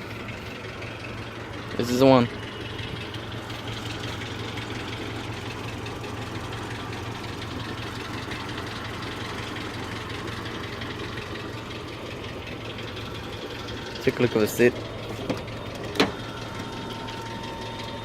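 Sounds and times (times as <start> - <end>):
pickup engine idling: 0.0 - 18.0.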